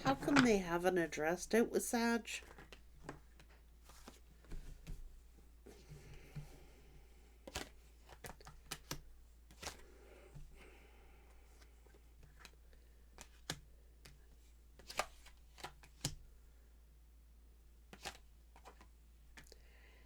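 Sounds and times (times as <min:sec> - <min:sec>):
cards snapping and tapping: 0:07.4 - 0:09.8, 0:12.2 - 0:14.2, 0:14.8 - 0:16.2, 0:17.9 - 0:19.5.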